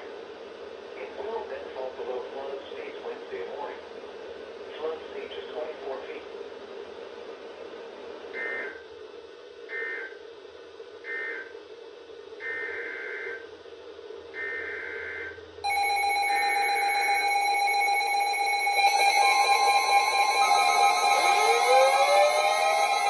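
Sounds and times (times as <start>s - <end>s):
faint steady background noise: 0.0s - 23.0s
loud steady attention tone: 15.6s - 23.0s
buzzy two-pitch digital chirps: 15.7s - 23.0s.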